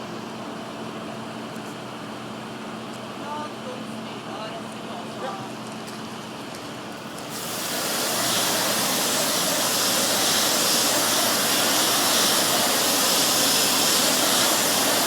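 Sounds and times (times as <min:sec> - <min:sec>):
high-pressure water jet spraying: 0:07.0 - 0:15.0.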